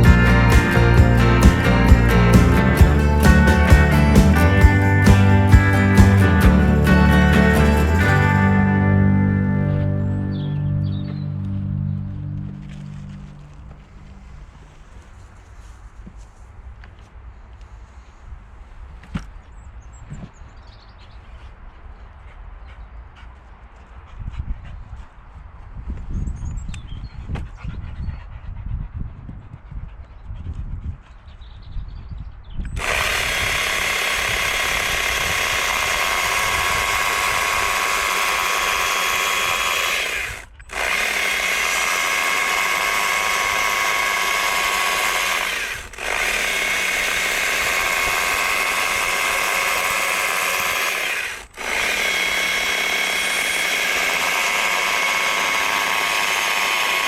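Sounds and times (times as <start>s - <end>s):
low rumbling and knocking: 0.0s - 9.2s
power tool running: 0.0s - 15.0s, 32.8s - 57.0s.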